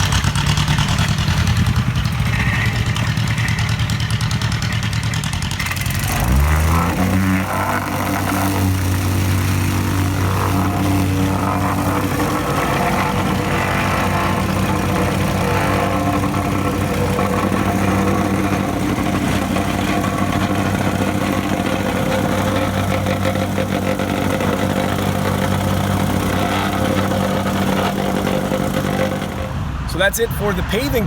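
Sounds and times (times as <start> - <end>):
plate compactor running: 0.0 - 29.8.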